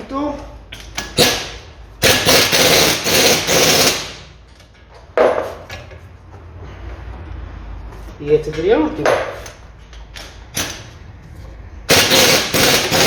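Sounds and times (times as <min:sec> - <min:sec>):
impact wrench hammering: 0:00.7 - 0:04.4, 0:11.9 - 0:13.0.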